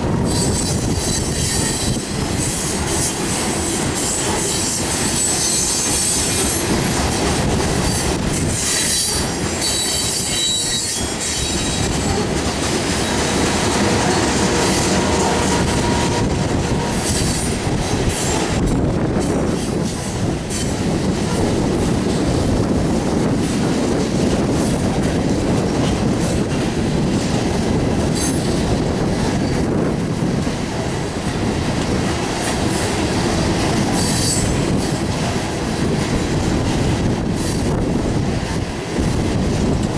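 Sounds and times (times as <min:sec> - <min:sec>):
continuous train rumble: 0:00.0 - 0:39.9
train wheels clicking over rail joints: 0:00.0 - 0:39.9
high-pitched wheel squeal: 0:08.5 - 0:12.2, 0:13.0 - 0:18.6, 0:34.0 - 0:34.8.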